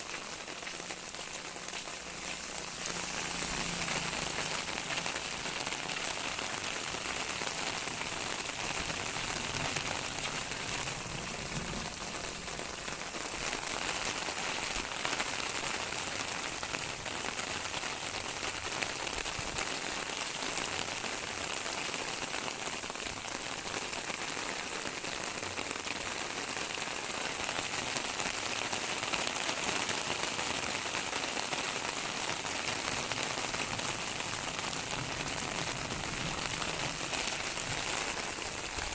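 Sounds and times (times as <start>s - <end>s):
rain pattering on surfaces: 0.0s - 38.9s.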